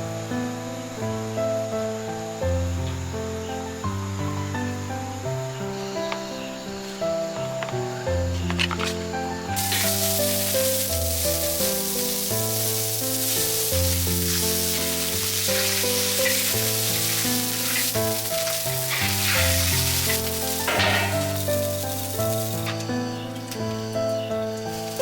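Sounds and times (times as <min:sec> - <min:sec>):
background music with held notes: 0:00.0 - 0:25.0
food sizzling in hot oil: 0:08.2 - 0:25.0.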